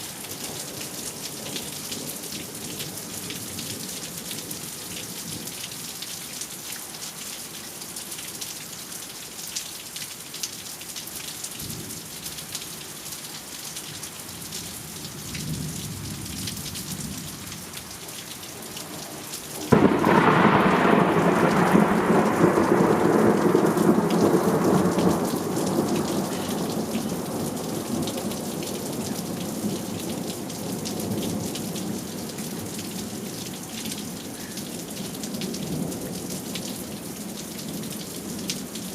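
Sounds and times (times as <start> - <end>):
steady rain: 0.0 - 38.9
low rumble of thunder: 19.6 - 33.5
loud thunder crack: 19.7 - 27.3.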